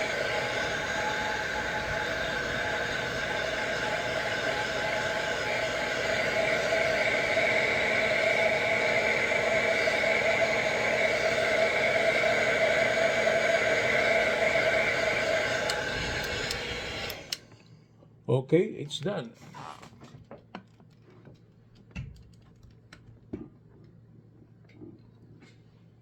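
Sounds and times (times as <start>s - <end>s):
heat gun fan whirring: 0.0s - 17.6s.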